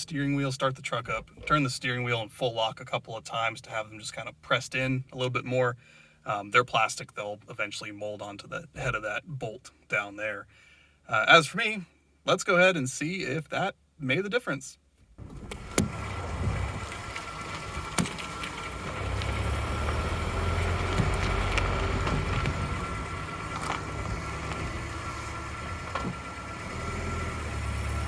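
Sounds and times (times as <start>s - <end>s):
pickup engine rumble: 15.0s - 28.0s.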